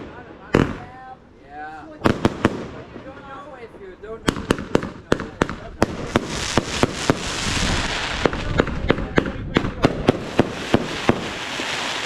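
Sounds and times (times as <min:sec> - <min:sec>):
fireworks bangs: 0:00.0 - 0:01.2, 0:01.9 - 0:12.0
fireworks crackling hiss: 0:04.2 - 0:12.0.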